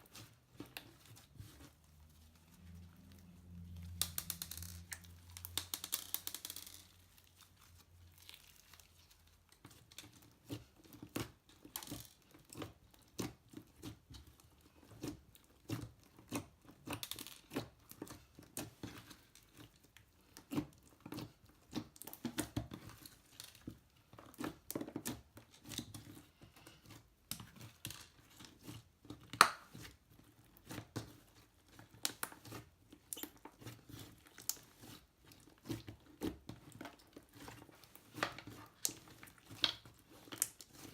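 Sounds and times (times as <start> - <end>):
slime crackling and popping: 3.8 - 13.9, 35.6 - 40.9.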